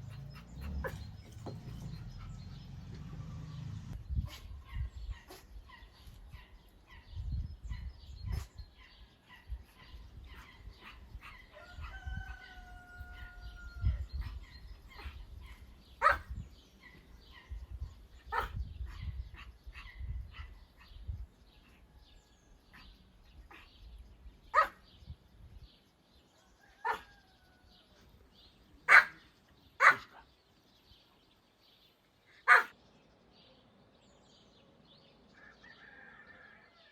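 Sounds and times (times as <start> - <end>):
dog barking: 0.0 - 1.2, 16.0 - 16.4, 18.3 - 20.9, 24.5 - 24.8, 26.8 - 27.1, 28.9 - 30.2, 32.4 - 32.8
small birds chirping: 0.0 - 36.0
rooster crowing: 11.6 - 14.0, 35.4 - 36.9.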